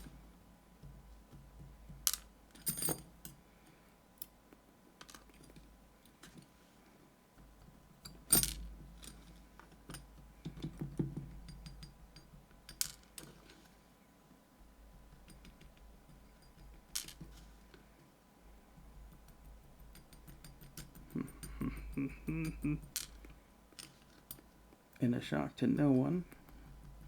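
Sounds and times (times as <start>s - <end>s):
small metal parts clicking: 8.0s - 9.3s, 11.5s - 13.4s, 19.1s - 24.5s.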